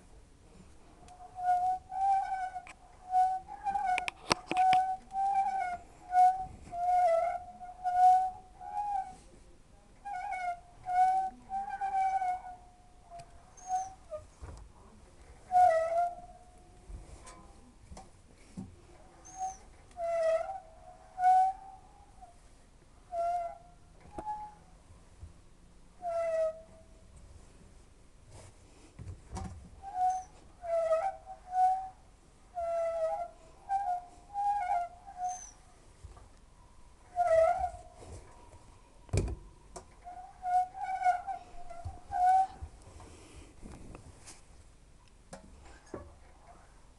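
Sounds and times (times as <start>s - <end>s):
washing machine bearings squealing: 1.2s - 9.2s, 10.0s - 14.3s, 15.5s - 16.5s, 19.2s - 22.1s, 29.8s - 32.0s, 32.6s - 35.6s, 37.1s - 37.8s, 40.0s - 42.6s.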